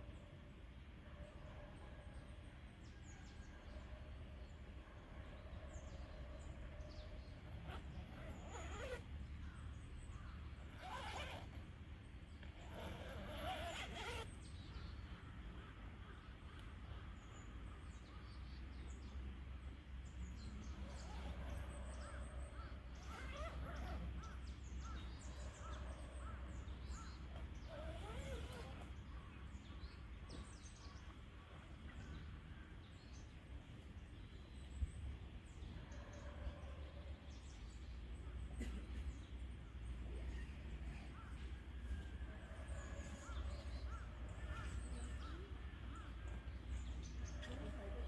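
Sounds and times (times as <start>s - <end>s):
bird calls: 5.5s - 11.6s, 37.4s - 48.0s.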